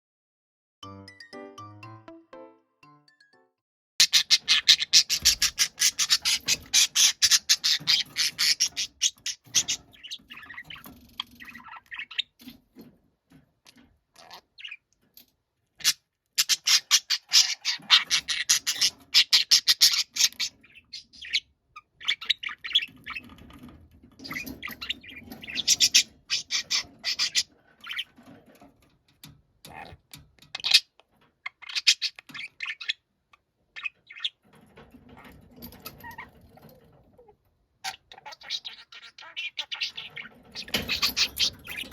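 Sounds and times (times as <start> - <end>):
budgerigar squawking and chattering: 4.0 - 12.6, 14.2 - 14.9, 15.8 - 23.5, 24.2 - 28.2, 29.6 - 34.4, 35.1 - 41.9.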